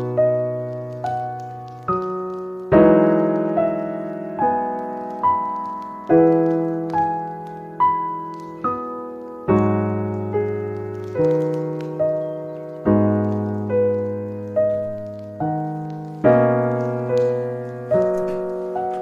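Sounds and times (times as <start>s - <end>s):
slow solo piano music: 0.0s - 19.0s.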